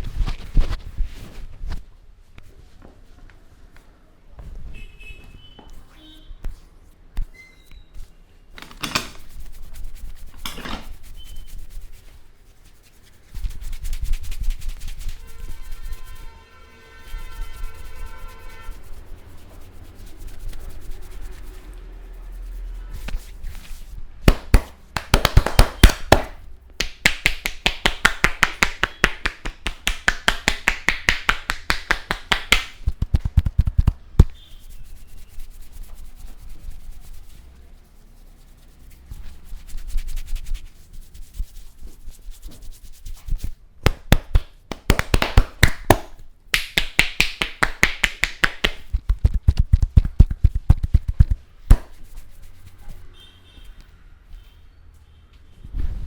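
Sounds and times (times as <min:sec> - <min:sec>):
rubbing and tapping on head: 0:00.0 - 0:02.5, 0:06.4 - 0:16.3, 0:16.9 - 0:53.1
hands striking head in massage: 0:24.2 - 0:34.4, 0:43.8 - 0:52.2.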